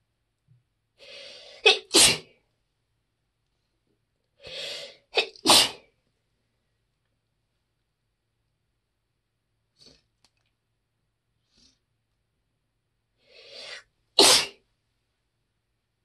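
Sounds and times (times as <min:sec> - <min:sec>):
person sneezing quietly: 0:01.3 - 0:02.3, 0:04.5 - 0:05.9, 0:13.6 - 0:14.6.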